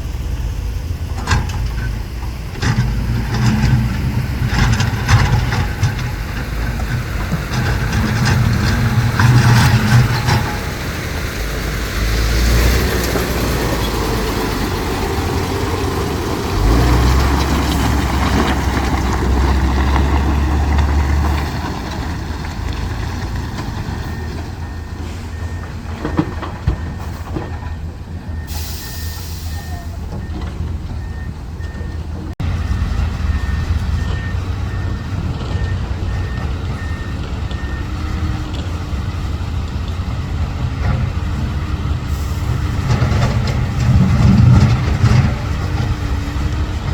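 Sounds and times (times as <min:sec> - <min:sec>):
heavy diesel engines rumbling: 0:00.0 - 0:46.9
reversing alarm beeping: 0:24.0 - 0:32.0, 0:32.6 - 0:38.0
air brake hiss: 0:28.5 - 0:30.0.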